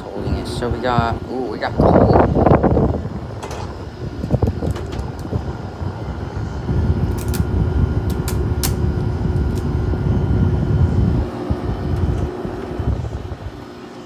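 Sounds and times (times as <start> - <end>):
air conditioner fan blowing: 0.0 - 14.0
steady hum: 0.0 - 14.0
sharp clicks: 8.1 - 8.8.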